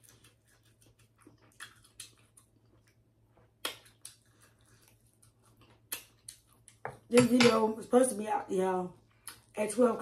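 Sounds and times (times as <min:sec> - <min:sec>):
person chewing wetly: 0:00.0 - 0:06.8.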